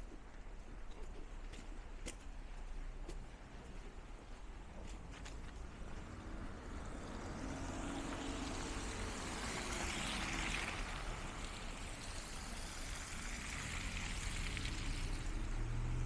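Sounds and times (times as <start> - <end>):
tyres hissing on wet road: 6.0 - 16.0.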